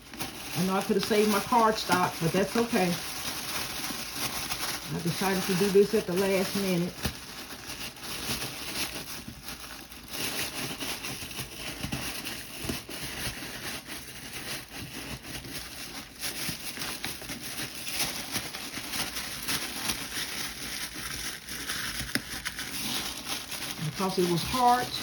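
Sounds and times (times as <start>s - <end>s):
tissue paper rustling and crinkling: 0.0s - 25.0s.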